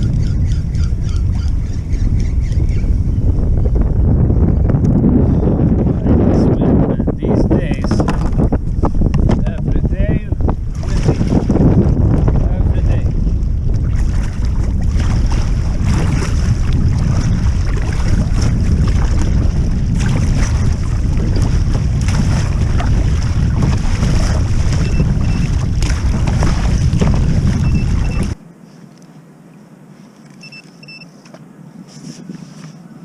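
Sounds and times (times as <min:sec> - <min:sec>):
wind buffeting microphone: 0:00.0 - 0:28.4
water splashing against kayak: 0:07.5 - 0:28.4.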